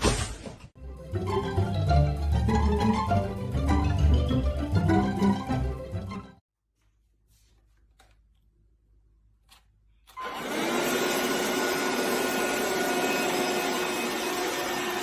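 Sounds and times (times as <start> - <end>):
electric motor appliance whirring: 10.1 - 15.0.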